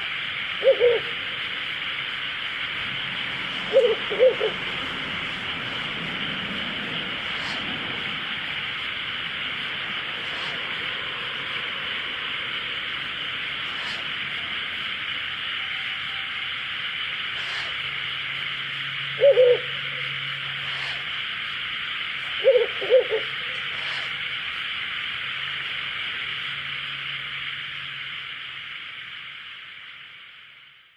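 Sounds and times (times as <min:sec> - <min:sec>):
steady hiss: 0:00.0 - 0:30.9
owl hooting: 0:00.5 - 0:01.8, 0:03.6 - 0:04.8, 0:07.2 - 0:07.7, 0:12.4 - 0:21.4, 0:22.2 - 0:24.4.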